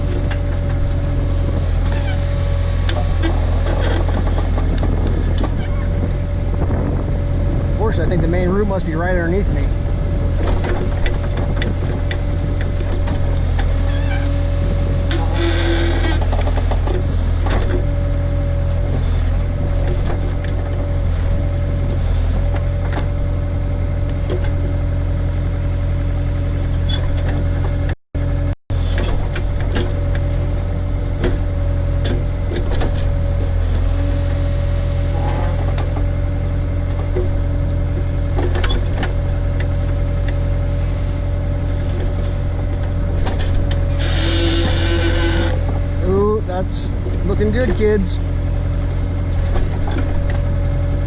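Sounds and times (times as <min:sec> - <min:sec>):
backhoe engine running: 0:00.0 - 0:51.0.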